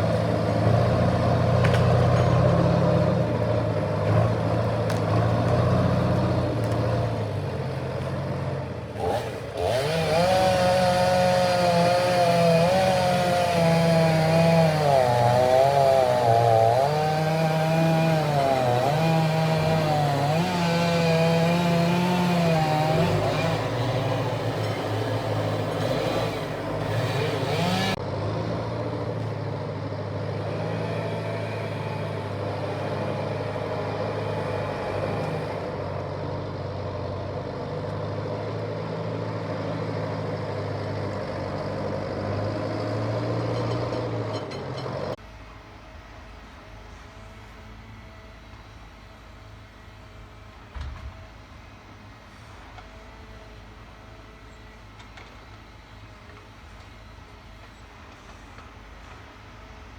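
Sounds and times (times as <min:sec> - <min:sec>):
chainsaw engine running: 0:00.0 - 0:28.2, 0:30.1 - 0:36.0.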